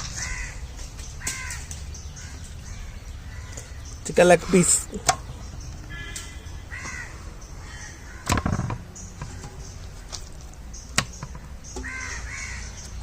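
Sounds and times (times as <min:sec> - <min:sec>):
crows cawing: 0:00.0 - 0:03.9, 0:05.8 - 0:08.6, 0:11.8 - 0:12.8.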